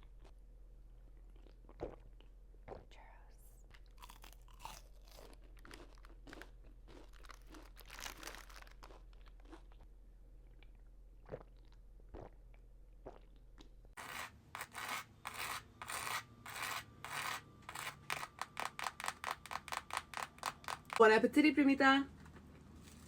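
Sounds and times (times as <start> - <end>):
mouth chewing sounds: 1.2 - 2.9, 3.6 - 13.7
crisp crunching bites: 4.0 - 9.8.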